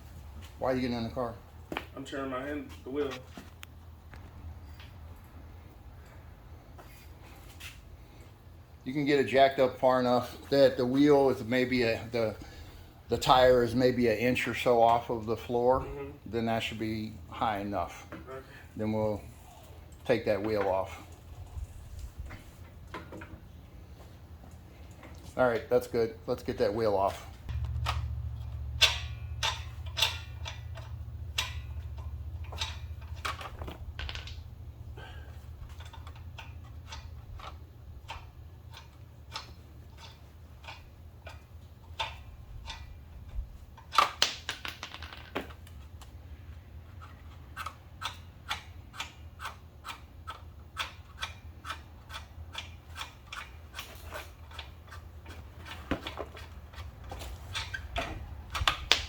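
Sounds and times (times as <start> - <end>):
low hum: 27.3 - 39.3
wrench clicking on lug nuts: 27.5 - 33.6, 35.6 - 44.5, 47.0 - 59.0.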